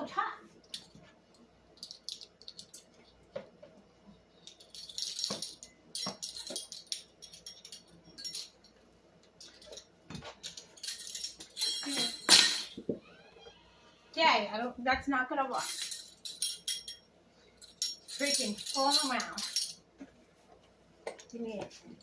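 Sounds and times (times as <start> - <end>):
kitchen utensils rattling: 4.5 - 8.7, 9.4 - 12.8, 15.5 - 19.8.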